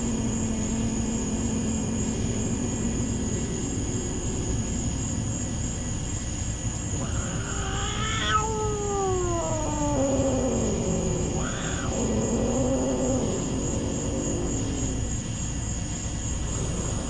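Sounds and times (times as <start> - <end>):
steady low rumble: 0.0 - 7.6, 8.8 - 17.0
dog howling: 7.0 - 15.1.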